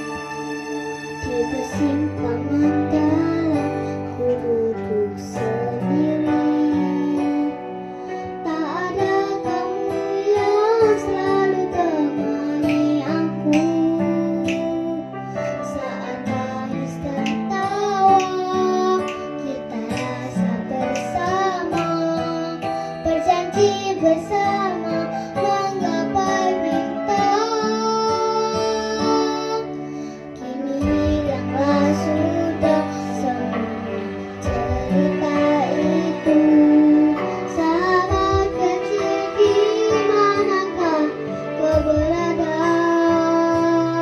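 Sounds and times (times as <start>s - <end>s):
guitar accompaniment: 0.0s - 44.0s
person singing: 1.2s - 44.0s.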